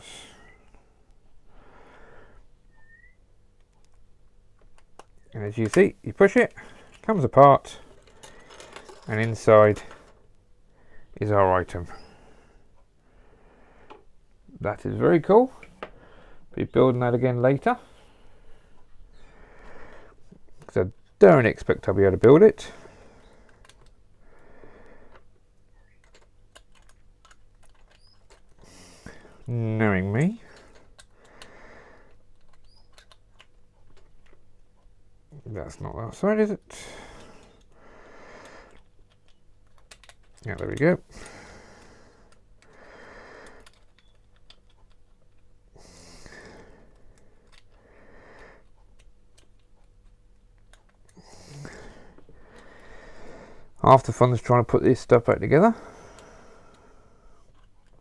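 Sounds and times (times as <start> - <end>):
plastic toy pieces clicking: 25.8 - 28.6, 32.1 - 34.4, 38.7 - 40.4, 43.4 - 45.5.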